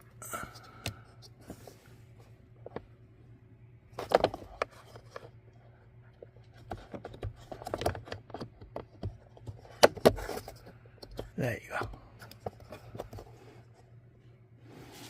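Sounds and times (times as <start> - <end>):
plastic clicks and scrapes: 6.1 - 11.3.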